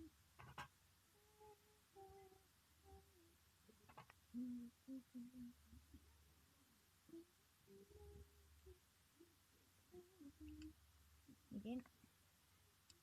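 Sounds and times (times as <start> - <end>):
person humming: 1.1 - 6.0, 7.1 - 9.3, 9.9 - 11.8.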